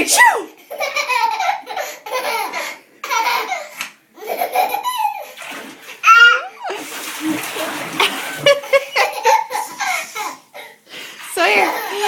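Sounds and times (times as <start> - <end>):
toddler laughing: 0.6 - 5.4, 6.0 - 6.8, 8.4 - 10.8.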